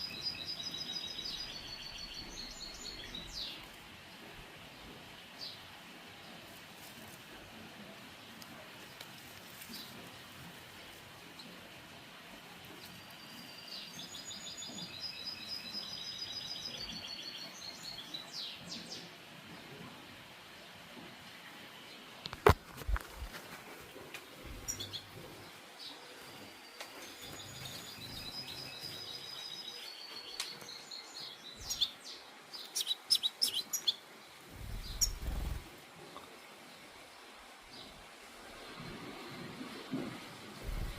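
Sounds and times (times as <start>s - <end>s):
goldfinch twittering song: 0.0s - 3.6s, 12.8s - 19.0s, 24.5s - 25.1s, 25.8s - 34.0s, 34.6s - 35.6s
bird chirping: 0.0s - 3.7s, 12.7s - 19.1s, 24.3s - 35.6s.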